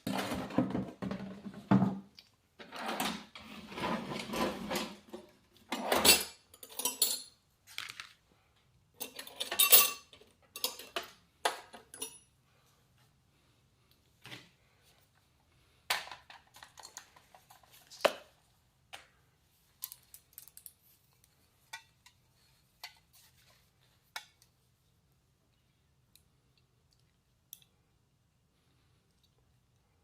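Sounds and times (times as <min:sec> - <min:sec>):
small metal parts clinking: 0:06.1 - 0:07.9, 0:09.0 - 0:11.0, 0:19.8 - 0:20.8.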